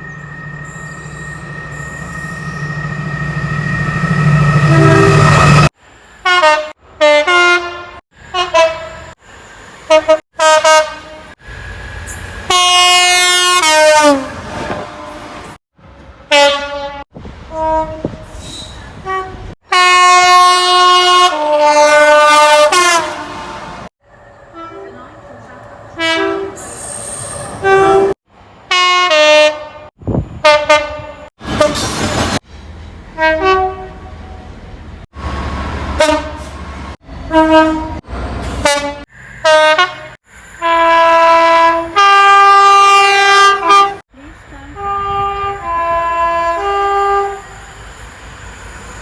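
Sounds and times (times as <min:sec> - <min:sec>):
train horn blasts: 0:00.0 - 0:09.2, 0:09.9 - 0:11.4, 0:12.5 - 0:15.6, 0:16.2 - 0:18.3, 0:19.0 - 0:23.9, 0:24.5 - 0:25.2, 0:25.9 - 0:26.7, 0:27.6 - 0:31.8, 0:33.2 - 0:34.5, 0:35.9 - 0:36.5, 0:37.3 - 0:47.5
two-tone train horn: 0:00.0 - 0:09.2, 0:09.9 - 0:11.4, 0:12.5 - 0:15.6, 0:16.2 - 0:18.2, 0:19.0 - 0:23.9, 0:24.5 - 0:25.2, 0:26.0 - 0:26.7, 0:27.6 - 0:31.8, 0:33.2 - 0:34.5, 0:35.9 - 0:36.5, 0:37.3 - 0:47.6
approaching train rumble: 0:00.0 - 0:49.0.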